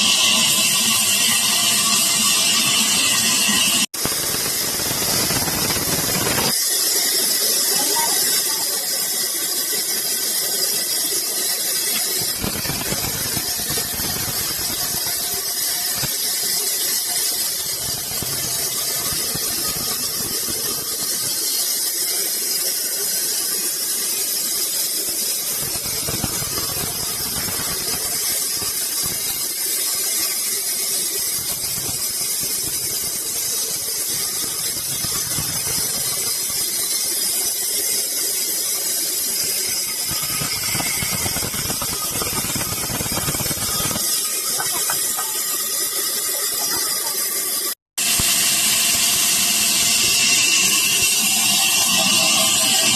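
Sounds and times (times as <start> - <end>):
saw cutting through wood: 0.0 - 47.0, 47.6 - 52.9.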